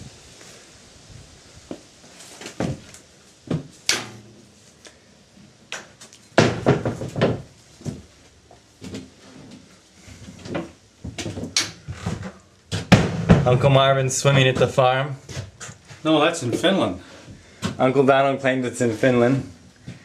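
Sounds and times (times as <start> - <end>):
door knocks and bumps: 6.4 - 7.5, 12.7 - 13.6.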